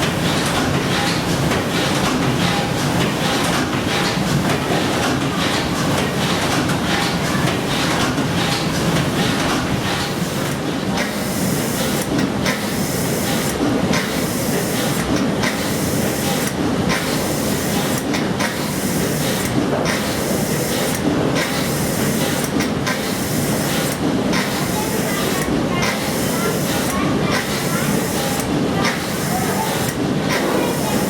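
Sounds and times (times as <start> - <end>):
steam engine clattering: 0.1 - 31.0.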